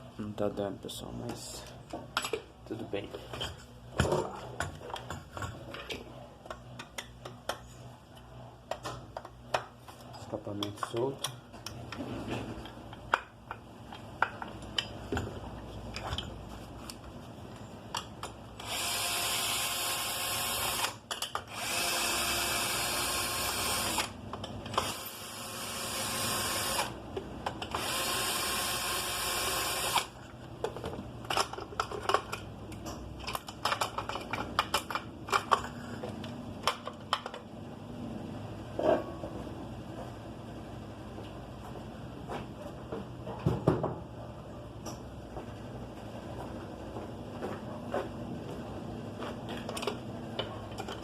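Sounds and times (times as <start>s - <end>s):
loud noisy shop tool: 18.6s - 27.0s, 27.6s - 30.2s
clicks and knocks of parts: 21.0s - 21.5s, 30.6s - 37.5s, 49.5s - 51.0s.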